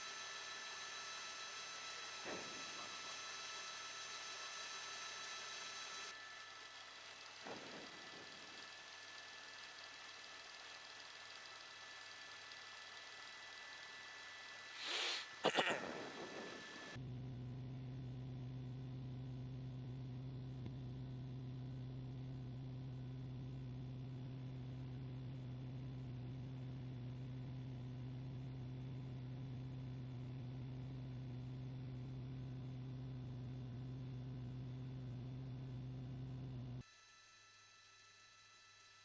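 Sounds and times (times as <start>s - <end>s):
even hiss: 14.6s - 17.0s
steady low hum: 15.4s - 36.8s.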